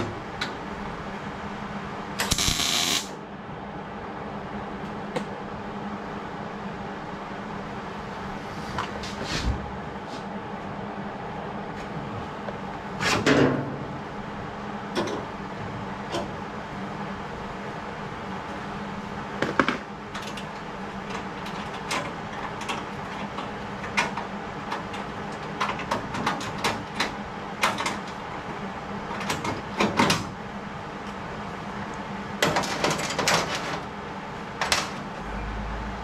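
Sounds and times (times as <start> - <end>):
steady hum: 0.0 - 25.6.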